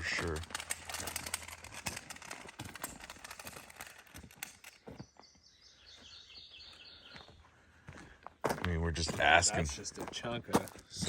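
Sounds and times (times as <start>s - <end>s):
rustling: 0.0s - 4.9s
bird chirping: 4.6s - 7.7s.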